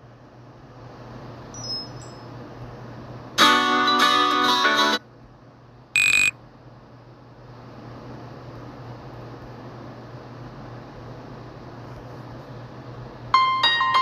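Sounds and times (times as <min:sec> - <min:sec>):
brief single tone: 0:06.0 - 0:06.3
phone ringtone melody: 0:06.0 - 0:06.3.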